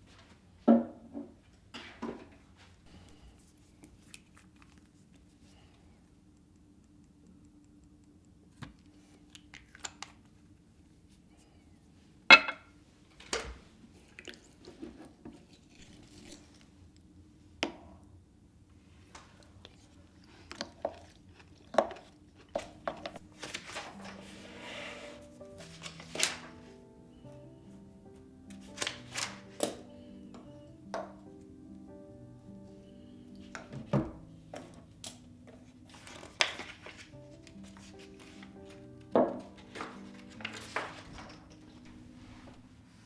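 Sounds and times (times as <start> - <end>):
household objects tapping and knocking: 12.3 - 12.6, 33.4 - 35.2.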